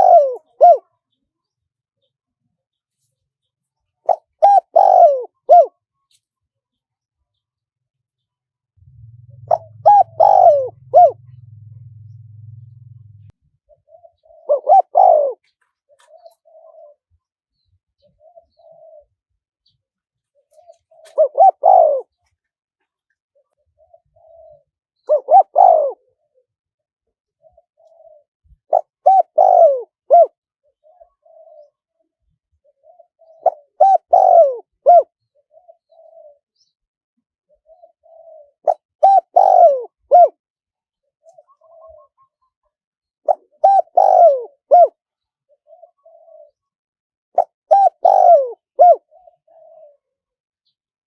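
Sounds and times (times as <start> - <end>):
dove cooing: 0.0 - 1.0, 4.0 - 6.1, 8.8 - 19.4, 20.3 - 22.3, 23.4 - 26.5, 27.3 - 36.7, 37.5 - 40.4, 41.1 - 42.5, 43.2 - 46.7, 47.4 - 50.8.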